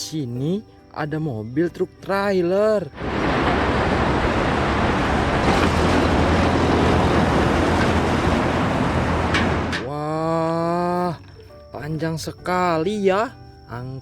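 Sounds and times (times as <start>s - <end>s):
rumbling vehicle engine: 3.0s - 9.9s.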